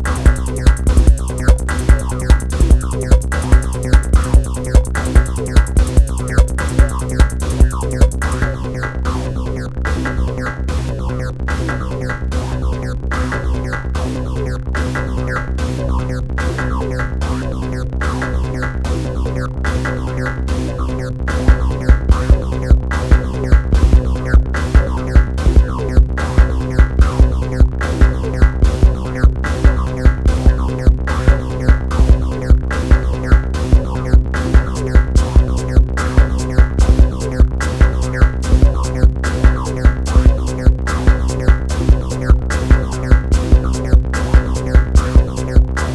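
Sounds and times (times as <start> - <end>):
drum machine beat: 0.0 - 8.5, 21.5 - 45.9
sustained synth drone: 0.0 - 45.9.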